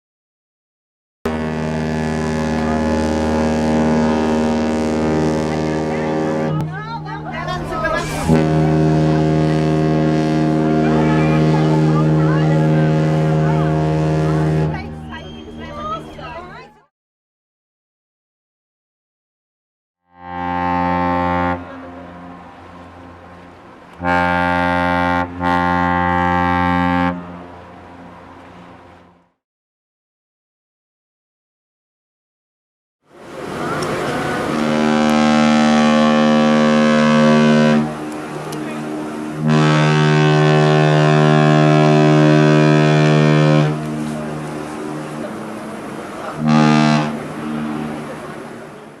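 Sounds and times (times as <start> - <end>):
deep ship's horn blasts: 1.3 - 16.6, 20.1 - 29.4, 33.2 - 49.0.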